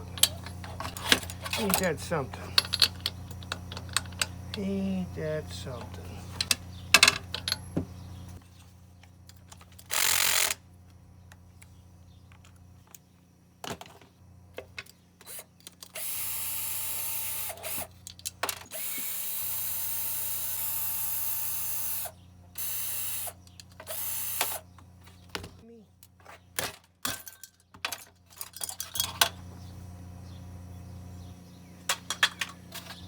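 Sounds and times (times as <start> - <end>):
cordless power tool whining: 15.3 - 17.9, 18.6 - 24.6.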